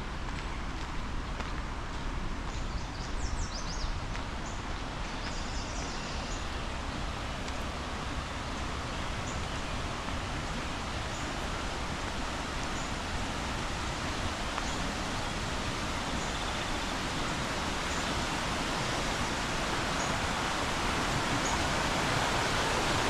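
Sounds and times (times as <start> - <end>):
steady rushing noise: 6.4 - 23.0.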